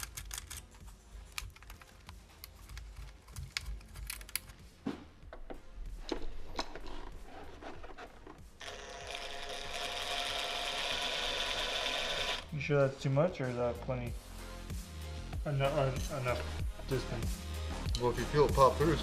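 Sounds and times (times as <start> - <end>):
tools clicking and tapping: 0.0 - 4.6
electric drill running: 8.6 - 12.5.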